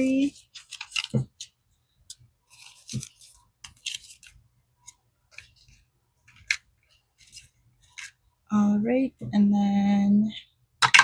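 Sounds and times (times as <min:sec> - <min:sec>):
paper handling knocks: 0:00.7 - 0:01.5.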